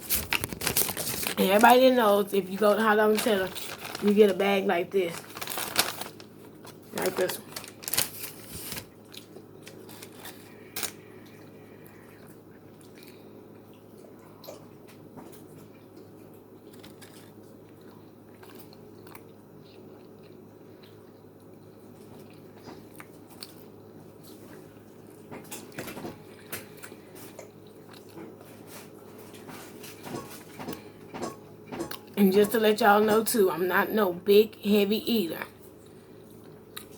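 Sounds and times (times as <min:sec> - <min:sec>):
person biting and chewing: 0:16.6 - 0:21.1.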